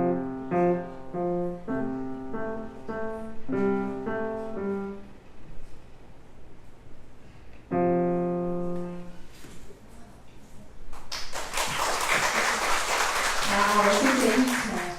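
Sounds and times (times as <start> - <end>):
piano chords: 0.0 - 5.4, 7.6 - 9.3.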